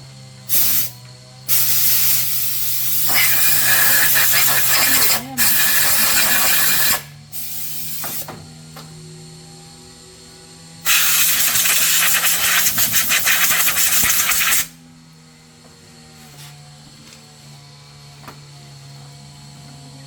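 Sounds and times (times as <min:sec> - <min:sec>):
steady low hum: 0:00.0 - 0:20.0
compressed air hissing: 0:00.5 - 0:08.4, 0:10.8 - 0:14.8.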